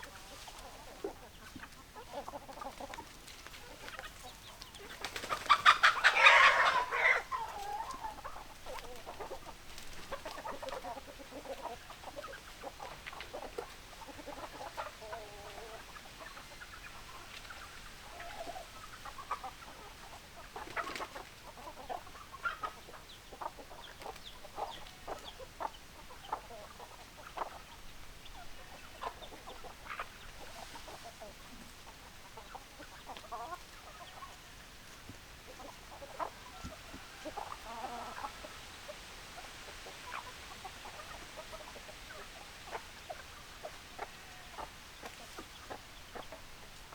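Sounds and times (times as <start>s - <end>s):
chickens clucking: 0.0s - 46.9s
loud chicken call: 5.4s - 8.2s.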